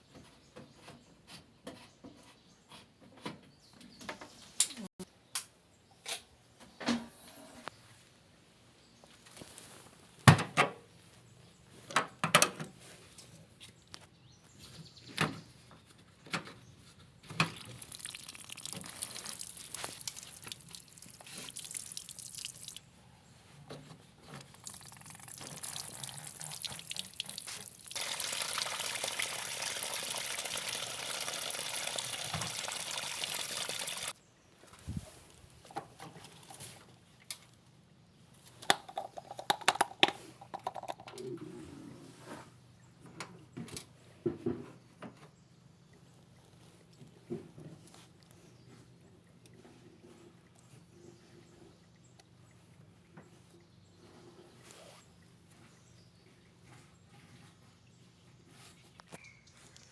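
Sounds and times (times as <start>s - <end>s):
water running: 17.4s - 22.8s, 24.3s - 34.2s.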